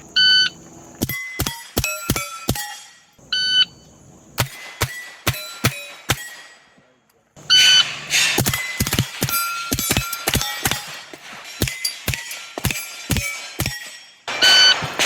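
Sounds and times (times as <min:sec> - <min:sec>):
steel plate pings: 0:01.0 - 0:03.8, 0:04.4 - 0:06.7, 0:07.4 - 0:15.0
shot timer beep: 0:07.5 - 0:07.9, 0:14.4 - 0:14.8
rifle shots: 0:07.5 - 0:15.0.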